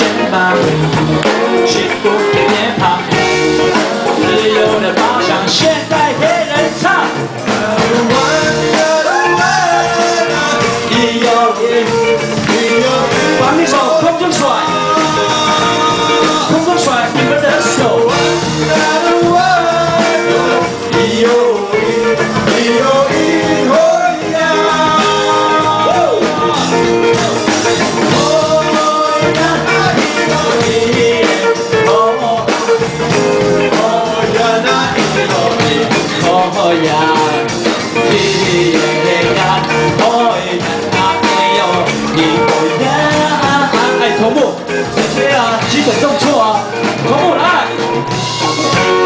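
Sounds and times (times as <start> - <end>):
pop song with singing: 0.0 - 49.0.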